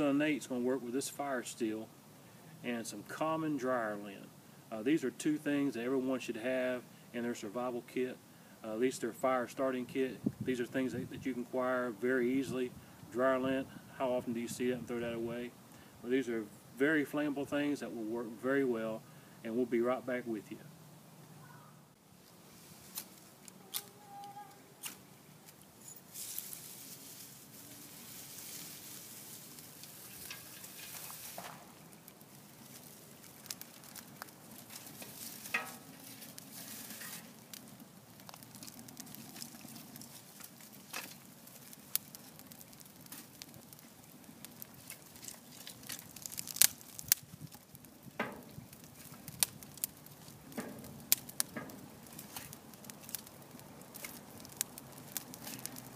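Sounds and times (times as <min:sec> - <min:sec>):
tinder clicking and crackling: 0:22.0 - 0:55.9
fire steel scraping: 0:22.2 - 0:55.9.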